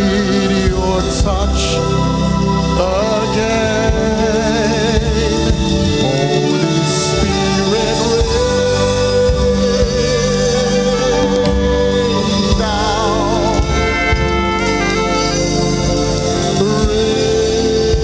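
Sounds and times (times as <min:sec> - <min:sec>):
gospel choir singing: 0:00.0 - 0:18.0
instruments playing: 0:00.0 - 0:18.0.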